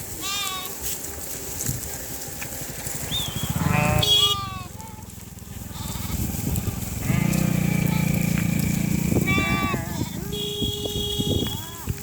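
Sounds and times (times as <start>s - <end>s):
sheep bleating: 0.2s - 0.8s, 3.4s - 6.3s, 7.0s - 12.0s.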